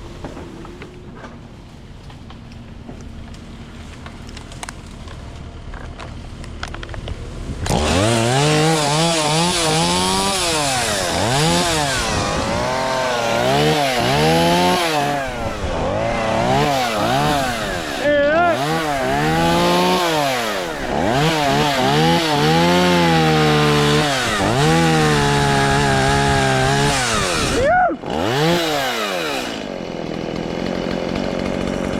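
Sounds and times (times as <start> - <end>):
chainsaw revving: 7.6 - 31.9.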